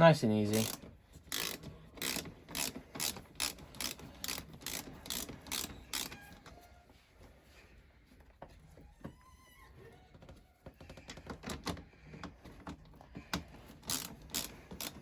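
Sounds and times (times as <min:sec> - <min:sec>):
ratchet wrench clicking: 0:00.5 - 0:06.3, 0:13.8 - 0:15.0.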